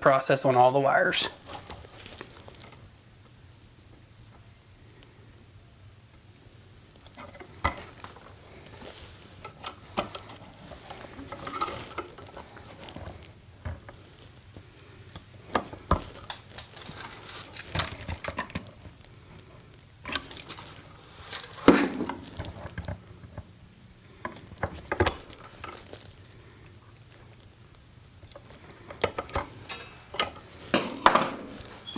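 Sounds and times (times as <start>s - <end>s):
wire strippers clicking and rasping: 15.1s - 23.0s.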